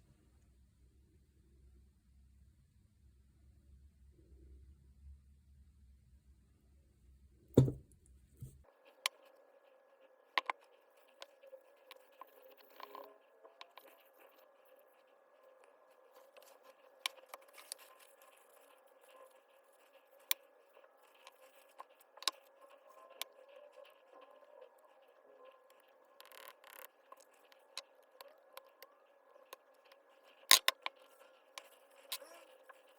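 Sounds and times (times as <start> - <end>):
loud knock: 7.6 - 7.8.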